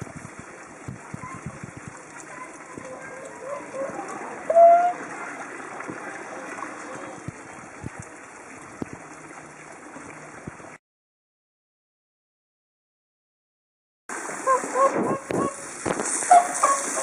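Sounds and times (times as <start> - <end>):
running water: 0.0 - 10.8, 14.1 - 17.0
swans calling: 2.4 - 7.0, 14.3 - 17.0.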